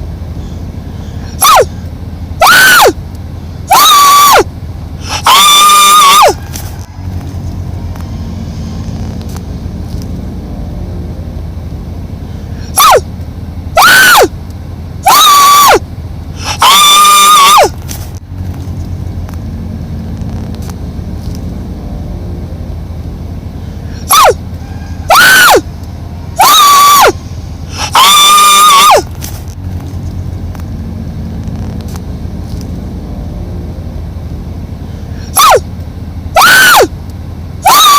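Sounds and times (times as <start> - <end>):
animal's loud high-pitched calls: 1.0 - 1.8, 2.4 - 3.0, 3.7 - 4.4, 5.0 - 6.6, 12.7 - 13.0, 13.8 - 14.3, 15.0 - 15.8, 16.4 - 17.8, 24.0 - 25.6, 26.4 - 29.1, 35.3 - 35.6, 36.4 - 36.9, 37.6 - 37.9.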